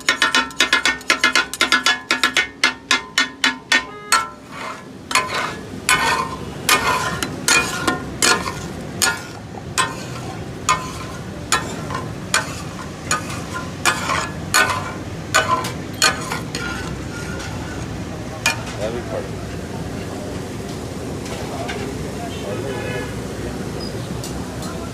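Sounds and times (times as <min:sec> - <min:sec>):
metal spatulas clanging on griddle: 0:00.0 - 0:19.1
food sizzling: 0:03.9 - 0:19.5.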